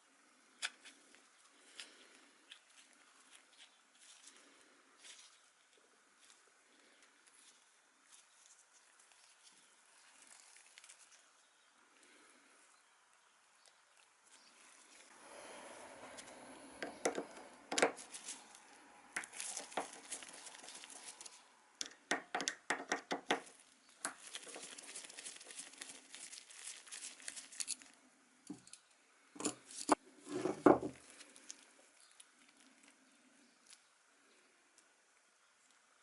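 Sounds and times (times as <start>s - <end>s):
small parts and tools clicking: 19.2s - 30.0s.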